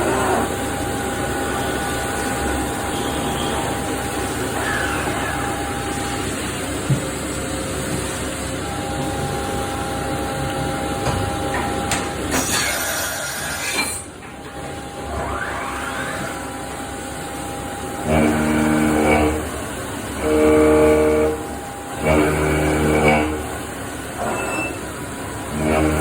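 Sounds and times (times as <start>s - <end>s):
milling machine cutting whine: 0.0s - 12.6s, 14.0s - 26.0s
cutter humming bursts: 20.2s - 23.6s.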